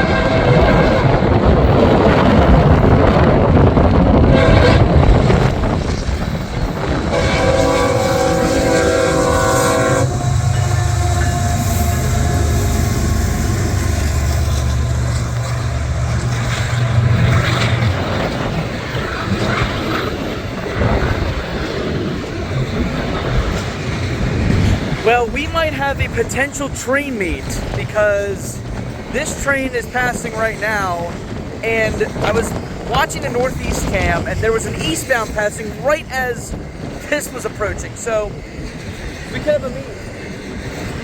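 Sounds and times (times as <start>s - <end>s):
train air horn: 0.0s - 1.2s, 4.3s - 5.0s, 7.1s - 18.0s
diesel locomotive engines droning: 0.0s - 41.0s
train wheels clattering on rails: 0.0s - 41.0s.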